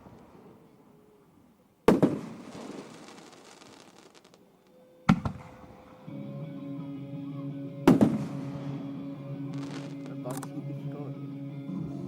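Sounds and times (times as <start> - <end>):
small firework crackles: 1.9 - 5.8, 9.5 - 10.2
firework shells bursting: 9.5 - 10.4.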